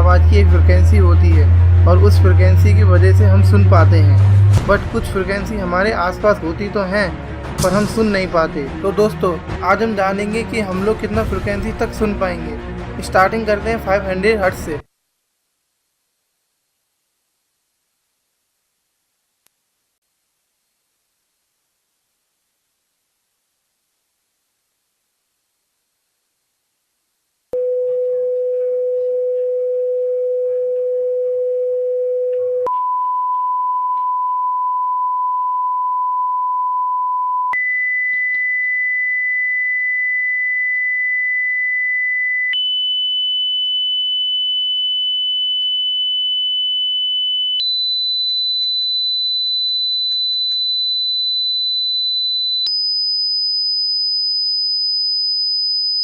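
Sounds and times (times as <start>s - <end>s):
pure sine tones: 0.0s - 4.7s, 27.5s - 56.0s.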